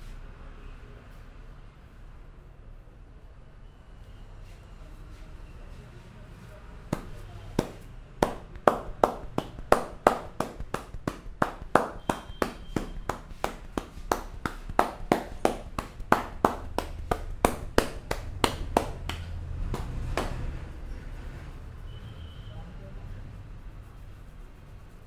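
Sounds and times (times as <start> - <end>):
hands slapping head: 7.0 - 20.5.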